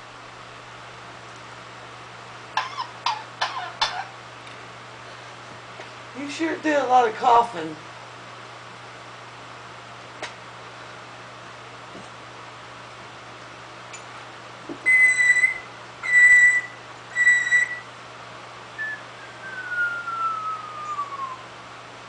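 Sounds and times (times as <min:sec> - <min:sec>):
parrot whistling: 0:14.8 - 0:17.9, 0:18.8 - 0:21.5.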